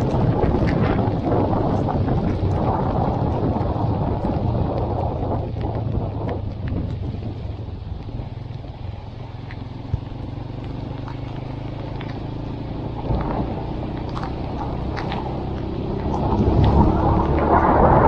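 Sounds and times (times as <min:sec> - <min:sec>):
motorcycle engine running: 0:00.0 - 0:18.0
rain ticking on microphone: 0:00.0 - 0:18.0
heavy rain: 0:12.9 - 0:18.0
loud rushing noise: 0:14.9 - 0:18.0.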